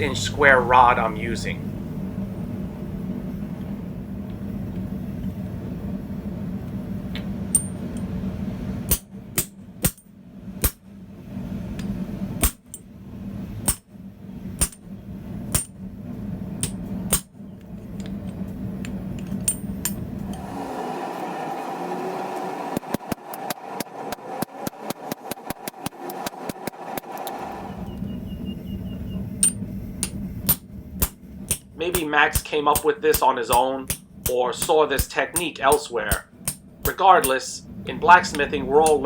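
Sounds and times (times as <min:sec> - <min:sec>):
steady low hum: 0:00.0 - 0:21.7, 0:22.4 - 0:39.0
hammer striking steel bar: 0:07.5 - 0:07.8, 0:08.9 - 0:10.8, 0:12.4 - 0:12.8, 0:13.6 - 0:13.8, 0:14.6 - 0:14.8, 0:15.5 - 0:15.8, 0:16.6 - 0:17.3, 0:29.4 - 0:37.4.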